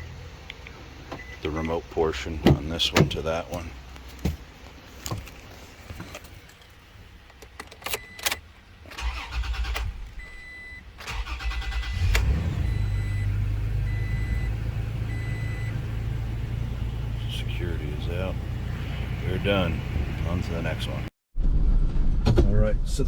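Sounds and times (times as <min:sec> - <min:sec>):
engine starter cranking: 0:07.7 - 0:10.2, 0:11.0 - 0:13.1
car engine idling: 0:08.5 - 0:21.1.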